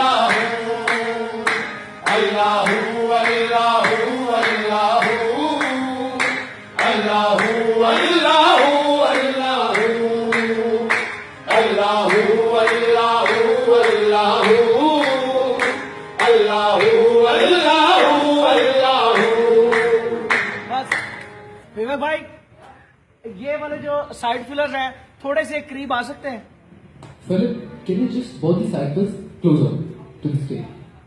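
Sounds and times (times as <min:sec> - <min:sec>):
group singing in chorus: 0:00.0 - 0:21.2
rhythmic hand clapping: 0:00.0 - 0:21.4.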